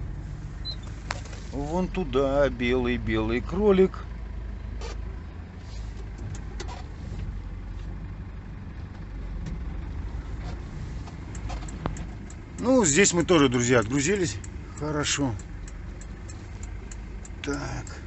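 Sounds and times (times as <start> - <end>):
diesel engine rumble: 0.0 - 18.0
faint clicks: 11.0 - 12.8, 13.8 - 18.0.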